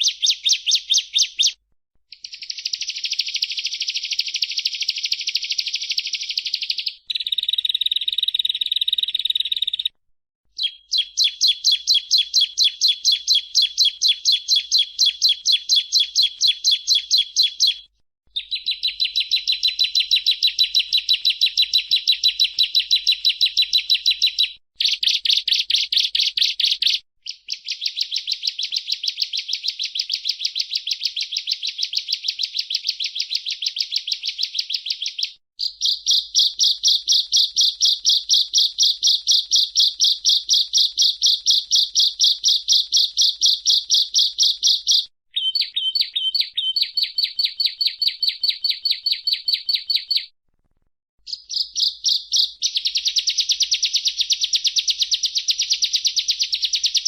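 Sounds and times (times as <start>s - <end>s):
bird singing shrill notes: 10.6s - 50.3s, 51.3s - 57.0s.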